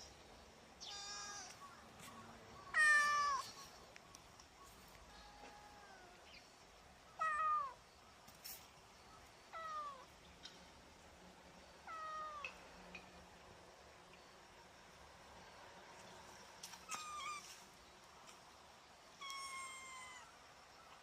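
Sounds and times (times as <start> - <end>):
young cat meowing: 0.8 - 1.6, 2.7 - 3.5, 7.2 - 7.8, 9.6 - 10.1, 11.9 - 12.5, 16.9 - 17.5, 19.2 - 20.3.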